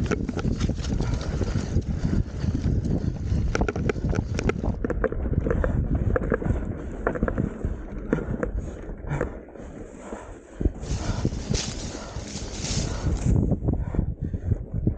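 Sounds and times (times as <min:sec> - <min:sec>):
bike frame rattling and clicking: 0:00.0 - 0:09.4
wind buffeting microphone: 0:00.0 - 0:14.9.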